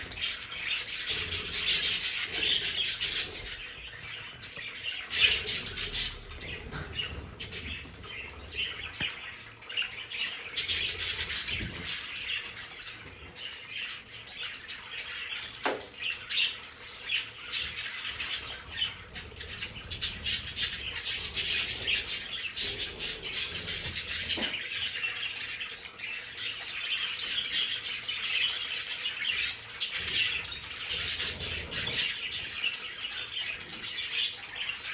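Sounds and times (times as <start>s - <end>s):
budgerigars chattering: 0.0s - 9.2s, 17.6s - 25.2s.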